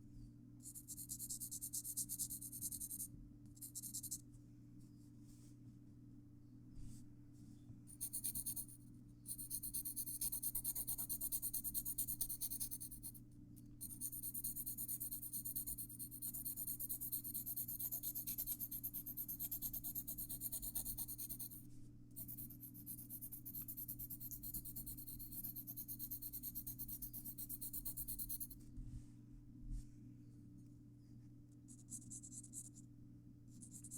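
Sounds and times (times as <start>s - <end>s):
pencil rubbing on paper: 8.0s - 8.7s, 9.3s - 13.1s, 13.8s - 21.6s, 22.2s - 28.6s.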